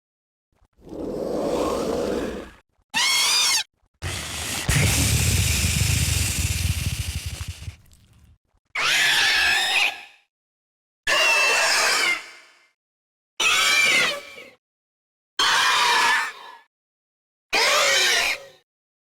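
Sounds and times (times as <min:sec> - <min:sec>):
high warbling screech: 0:04.0 - 0:08.0
dinosaur growling: 0:04.0 - 0:08.3.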